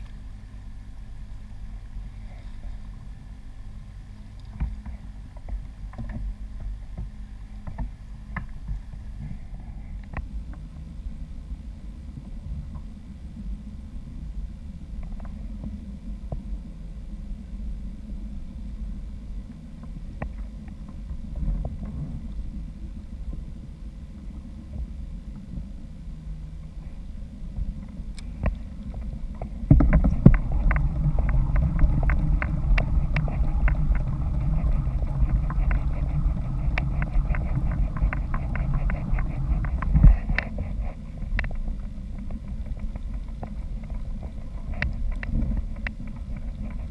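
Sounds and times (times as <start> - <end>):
water moving around kayak: 0.0 - 46.9
wind buffeting microphone: 27.5 - 46.9
rapid ticks: 27.8 - 46.9.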